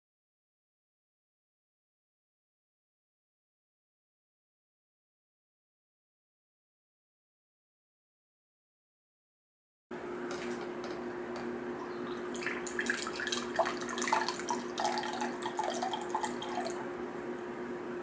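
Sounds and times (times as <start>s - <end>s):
steady low hum: 9.9s - 18.0s
liquid trickling into a container: 12.0s - 16.9s.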